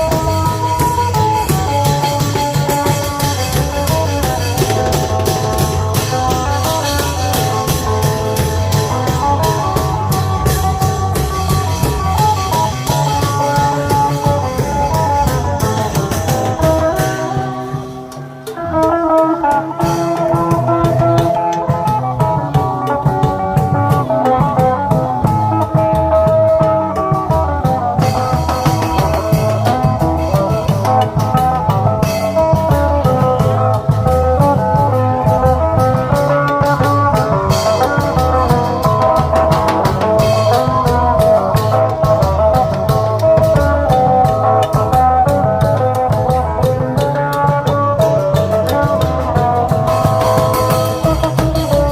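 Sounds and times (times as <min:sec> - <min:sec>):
driving drum beat: 0:00.0 - 0:51.9
plucked amplified lead melody: 0:00.0 - 0:51.9.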